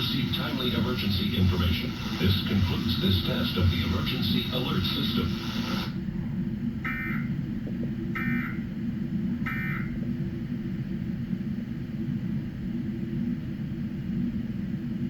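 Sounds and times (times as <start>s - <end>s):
steady low hum: 0.0s - 15.0s
data tone bursts: 6.8s - 7.3s, 8.2s - 8.6s, 9.4s - 10.0s.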